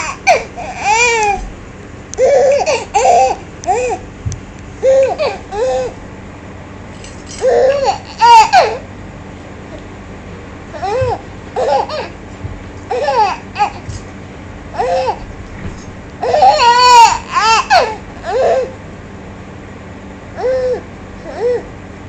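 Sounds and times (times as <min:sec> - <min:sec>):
baby cooing and laughing: 0:00.0 - 0:01.4, 0:02.2 - 0:04.0, 0:04.8 - 0:06.0, 0:07.4 - 0:08.8, 0:10.8 - 0:12.1, 0:12.9 - 0:13.9, 0:14.8 - 0:15.2, 0:16.2 - 0:18.8.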